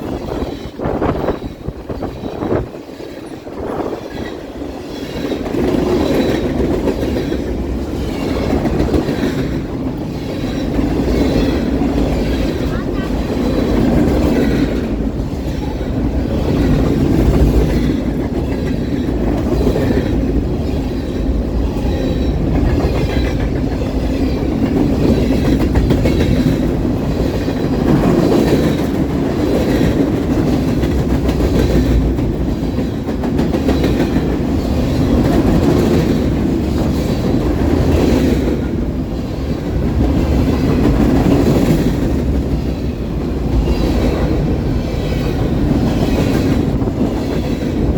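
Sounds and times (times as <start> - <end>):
freight train rumble: 0.0 - 47.9
wheels clacking over rail joints: 0.0 - 47.9
wind buffeting microphone: 0.0 - 47.9.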